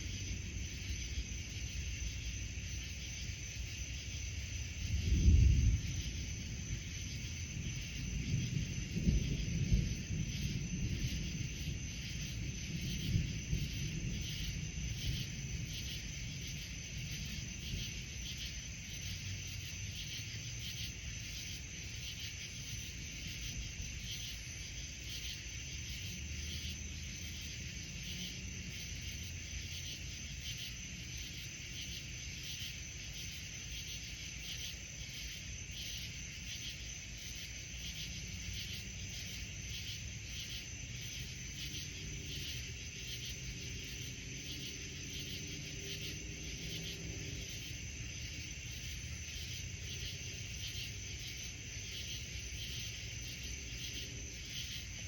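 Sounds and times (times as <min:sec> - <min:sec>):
crickets chirping: 0:00.0 - 0:55.0.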